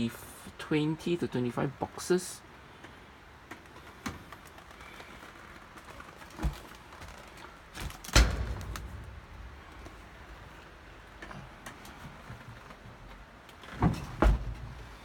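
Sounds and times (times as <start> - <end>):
low rumble: 8.0 - 11.6.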